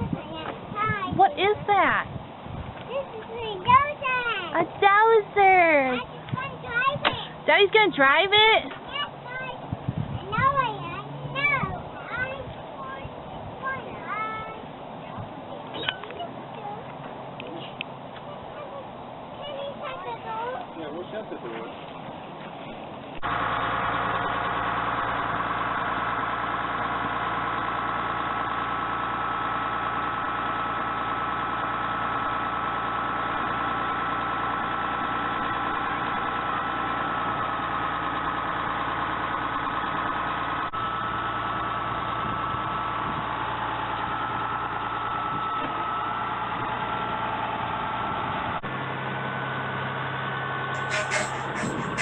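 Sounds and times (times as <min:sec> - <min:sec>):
bulldozer diesel engine running: 0:22.6 - 0:52.0.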